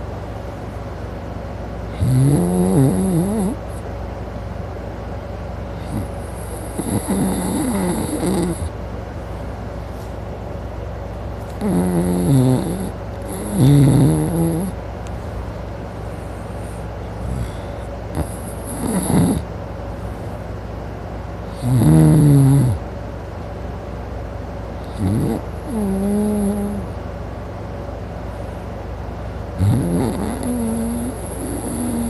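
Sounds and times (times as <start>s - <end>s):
man snoring loudly: 2.0s - 3.6s, 5.8s - 8.7s, 11.6s - 14.8s, 17.2s - 19.5s, 21.6s - 22.8s, 24.9s - 26.8s, 29.6s - 32.0s
quiet breathing: 15.0s - 18.7s.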